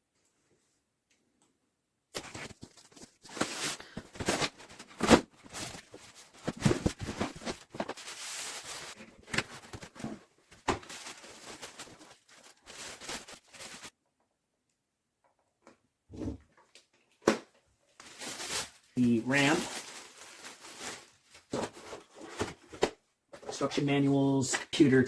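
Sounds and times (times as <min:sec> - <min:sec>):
packaging rustling and tearing: 0:02.2 - 0:13.9, 0:18.0 - 0:22.9.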